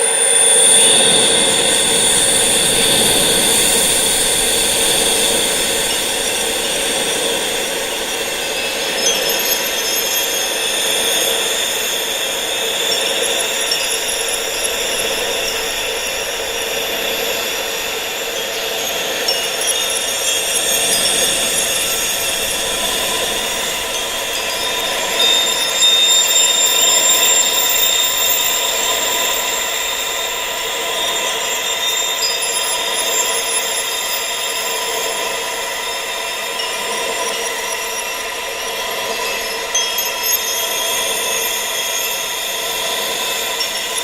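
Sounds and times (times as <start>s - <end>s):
wind-like noise: 0.0s - 32.2s
sustained high-pitched tones: 0.0s - 44.0s
faint glassy clinks: 1.2s - 44.0s.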